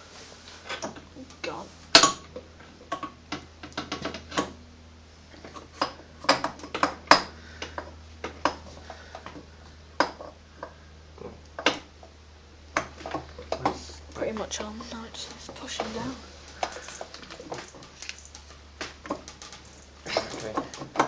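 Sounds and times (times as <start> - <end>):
sharp metallic clicks and knocks: 0.7 - 4.6, 5.4 - 9.4, 12.7 - 21.0.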